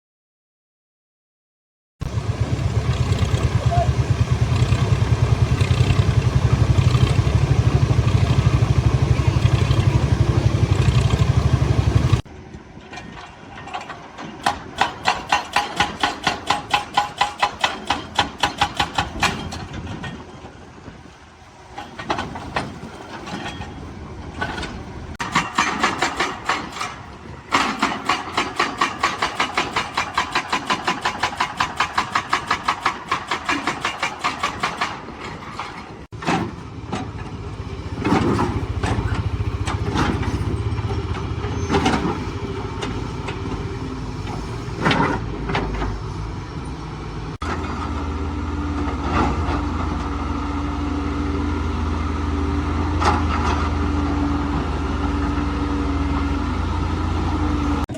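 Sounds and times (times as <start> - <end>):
diesel engine rumbling: 2.0 - 12.8, 34.9 - 57.9.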